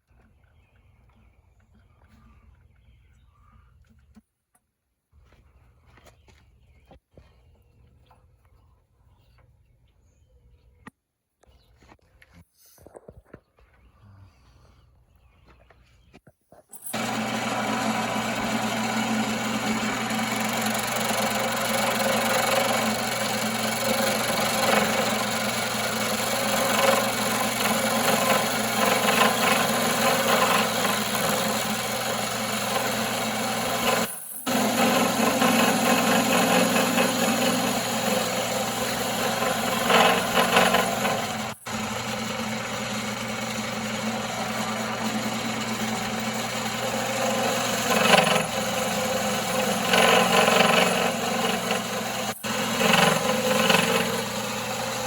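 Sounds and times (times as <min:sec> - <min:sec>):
turning tool cutting wood: 0:16.7 - 0:55.0
wood lathe motor hum: 0:16.8 - 0:55.0.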